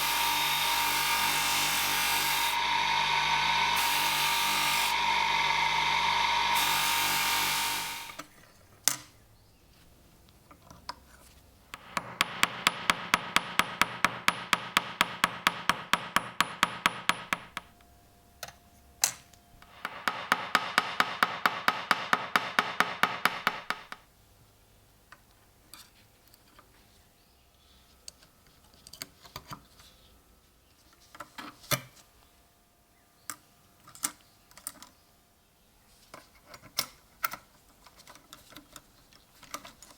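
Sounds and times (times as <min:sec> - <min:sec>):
power tool winding down: 0:00.0 - 0:08.3.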